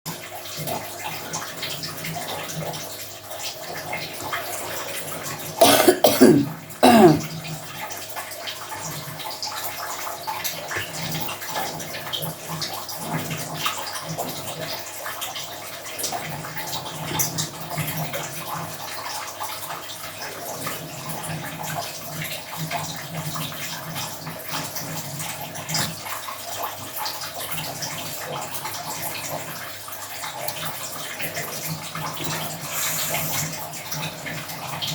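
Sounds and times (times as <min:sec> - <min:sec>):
running water: 0:00.1 - 0:34.9
person coughing: 0:05.6 - 0:07.3.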